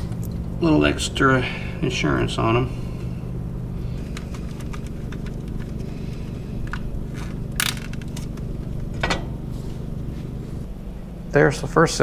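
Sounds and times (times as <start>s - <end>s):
steady low hum: 0.0s - 12.0s
electrical tape crackling: 3.8s - 9.0s.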